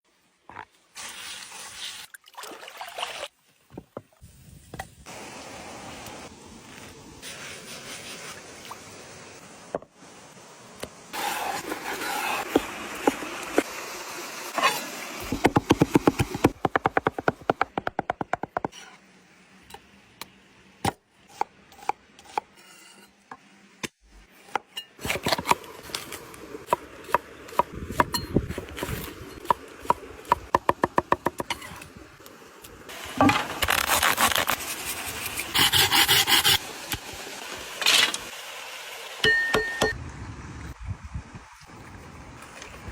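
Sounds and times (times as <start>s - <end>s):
rubbing and scraping on board: 33.6s - 36.6s.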